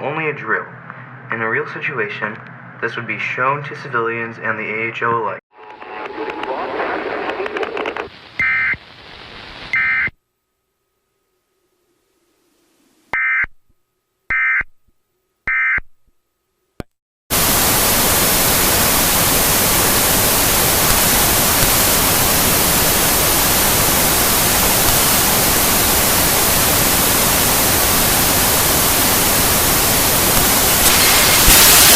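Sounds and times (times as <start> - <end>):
loud static hiss: 5.6 - 10.1, 17.3 - 31.9
electronic data bursts: 23.2 - 31.9.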